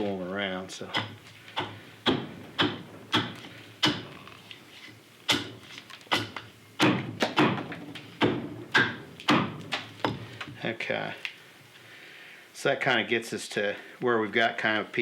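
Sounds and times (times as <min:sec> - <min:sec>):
axe chopping wood: 0:00.9 - 0:04.2, 0:05.3 - 0:10.5.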